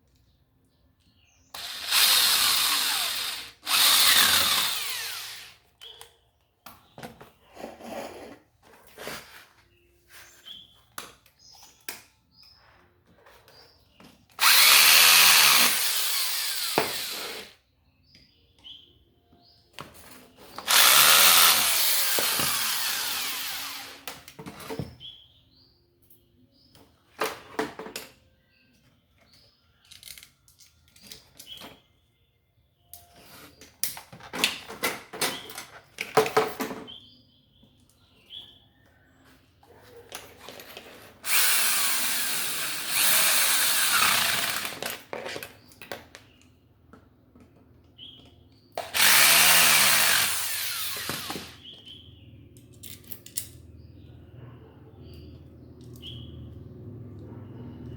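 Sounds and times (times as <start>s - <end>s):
electric drill running: 1.6s - 5.6s, 14.4s - 17.6s, 20.6s - 24.1s, 41.2s - 45.0s, 48.8s - 51.6s
metal parts clicking and knocking: 29.8s - 31.6s.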